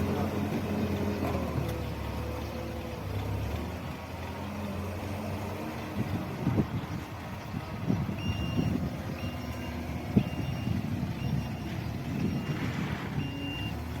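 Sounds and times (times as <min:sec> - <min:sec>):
diesel engine running: 0:00.0 - 0:14.0
reversing alarm beeping: 0:08.0 - 0:14.0.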